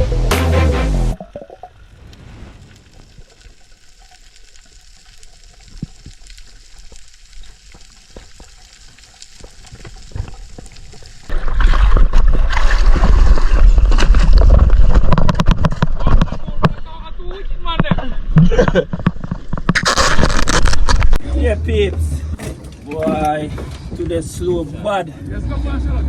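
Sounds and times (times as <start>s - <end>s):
faint clicks and crackle: 1.2s - 11.4s, 17.7s - 21.2s.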